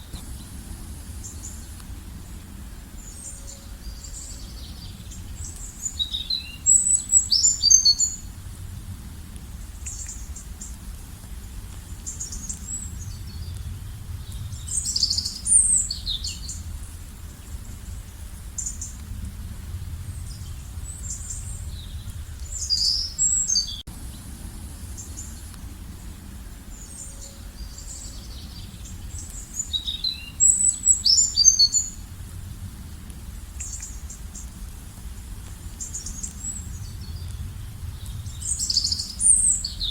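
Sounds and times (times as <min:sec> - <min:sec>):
low steady rumble: 0:00.0 - 0:39.9
songbird twittering: 0:03.0 - 0:08.3, 0:12.0 - 0:16.7, 0:20.1 - 0:24.2, 0:26.7 - 0:32.0, 0:35.8 - 0:39.9.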